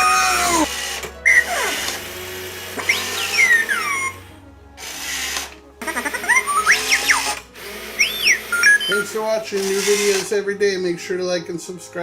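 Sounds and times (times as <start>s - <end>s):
robot toy electronic beeps and whistles: 2.8s - 4.2s, 5.9s - 10.2s.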